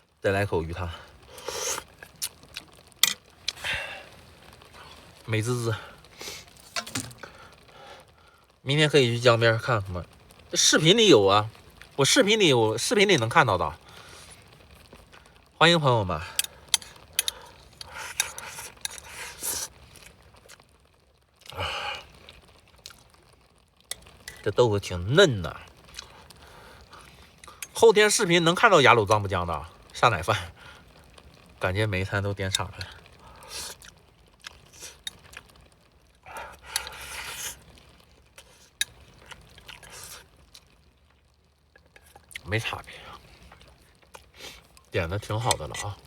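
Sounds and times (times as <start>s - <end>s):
small eating clicks: 0.9s - 3.8s, 11.5s - 24.9s, 25.5s - 46.0s.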